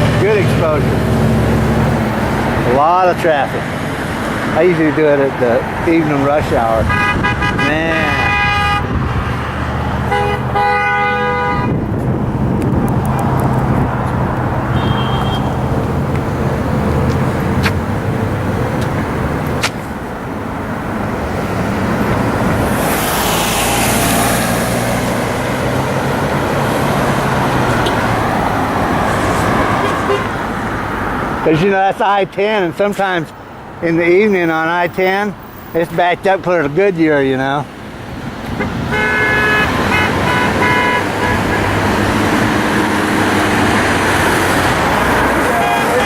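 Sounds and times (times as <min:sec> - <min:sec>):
heavy road traffic roar: 0:00.0 - 0:46.0
car horn: 0:06.8 - 0:09.2, 0:10.0 - 0:11.9, 0:14.6 - 0:16.4, 0:29.5 - 0:30.5, 0:38.6 - 0:42.1, 0:43.5 - 0:44.2, 0:45.4 - 0:46.0
passing vehicle hiss: 0:14.2 - 0:31.5.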